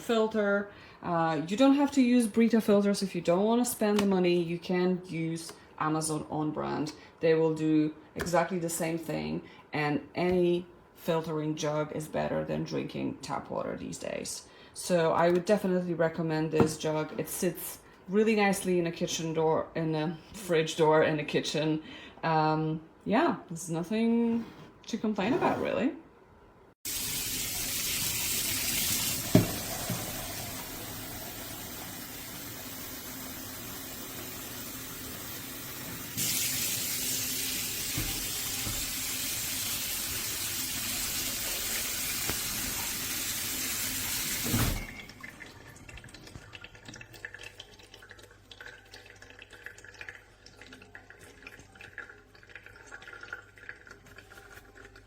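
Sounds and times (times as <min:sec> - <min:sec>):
water running from a tap: 0:26.8 - 0:55.0.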